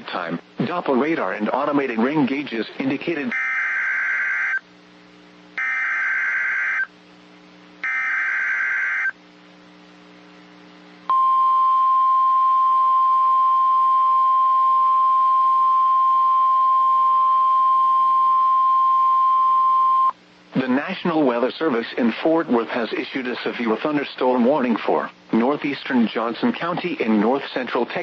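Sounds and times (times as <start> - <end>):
screeching data squawks: 3.3 - 4.6, 5.6 - 6.9, 7.8 - 9.2
steady warning alarm tone: 3.3 - 4.6, 5.6 - 6.9, 7.8 - 9.2.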